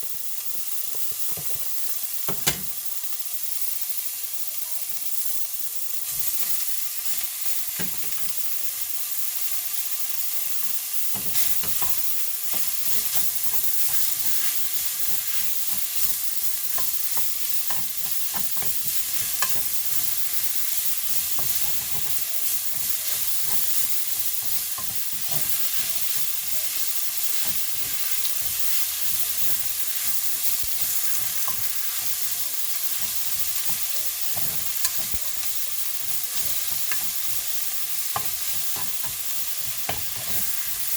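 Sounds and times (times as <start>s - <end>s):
food sizzling in a frying pan: 0.0s - 40.9s.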